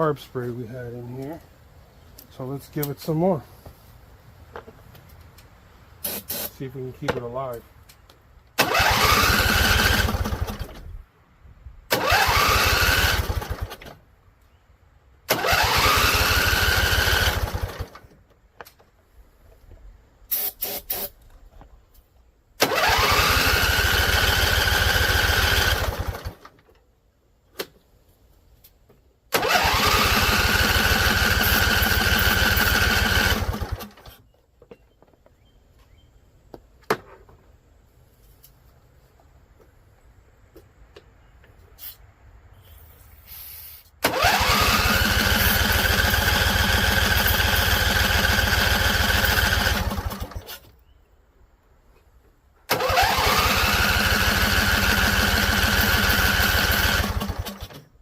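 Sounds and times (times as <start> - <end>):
starter motor whine: 8.6 - 10.8, 11.9 - 13.9, 15.3 - 18.0, 22.6 - 26.5, 29.3 - 34.1, 44.0 - 50.4, 52.7 - 57.8.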